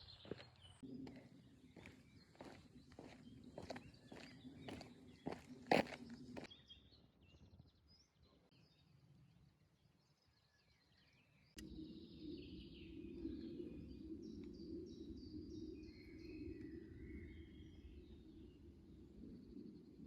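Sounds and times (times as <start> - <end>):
footsteps: 0.0 - 6.5
small birds chirping: 0.0 - 8.9.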